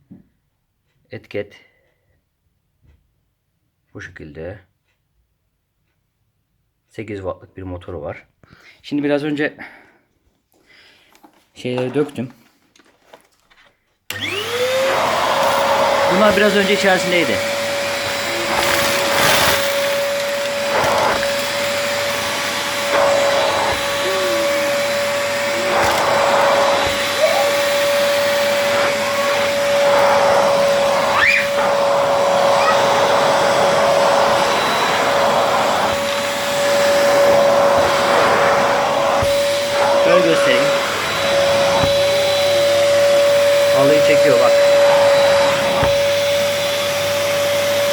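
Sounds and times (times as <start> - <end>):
upright vacuum running: 14.1 - 47.9
debris crackling in vacuum: 18.2 - 21.7.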